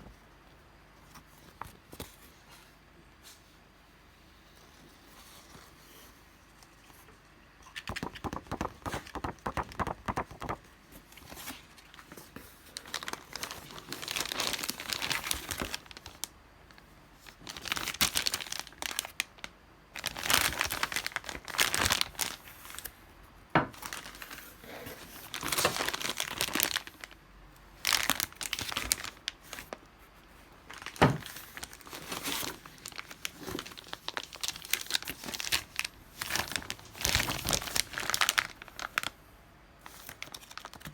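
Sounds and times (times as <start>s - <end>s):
packaging crinkling and tearing: 7.8s - 23.0s, 23.8s - 27.2s, 27.8s - 29.8s, 30.6s - 39.2s, 39.8s - 40.9s.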